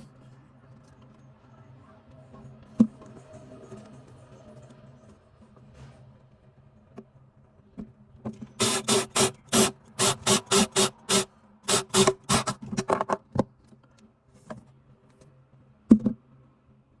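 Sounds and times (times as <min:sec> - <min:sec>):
power drill whirring bursts: 0:08.6 - 0:12.6.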